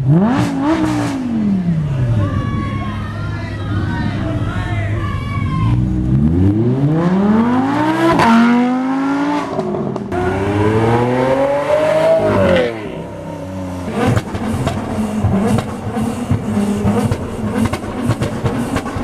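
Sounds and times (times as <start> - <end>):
car engine accelerating: 0.0 - 4.9, 5.6 - 19.0
exhaust cracks: 13.7 - 19.0.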